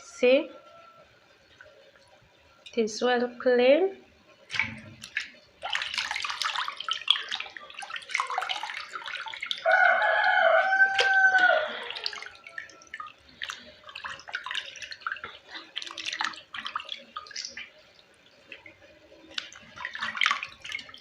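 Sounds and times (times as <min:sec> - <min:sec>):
water splashing and dripping: 0:04.4 - 0:21.0
rooster crowing: 0:09.6 - 0:13.0.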